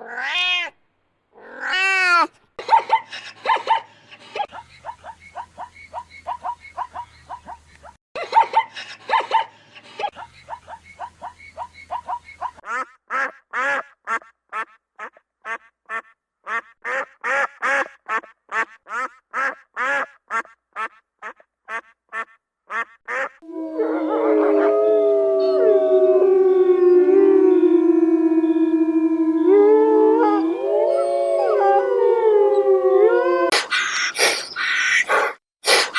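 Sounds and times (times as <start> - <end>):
dogs howling together: 23.4 - 33.7.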